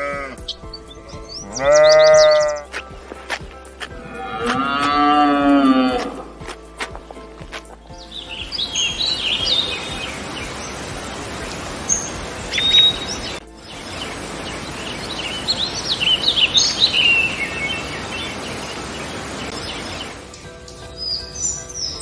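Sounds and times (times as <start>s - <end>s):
small birds chirping: 0.0s - 22.0s
steady background hiss: 7.1s - 21.5s.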